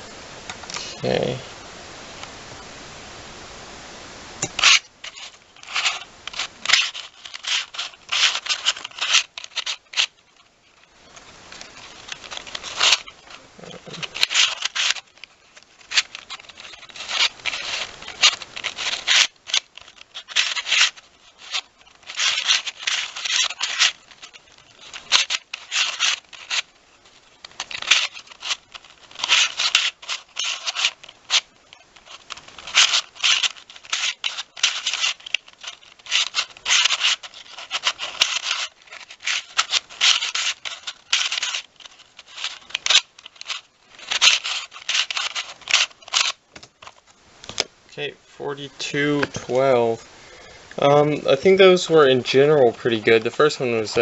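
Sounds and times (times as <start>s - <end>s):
puzzle cube pieces clicking: 4.5s - 10.2s, 12.0s - 26.7s, 27.4s - 47.0s.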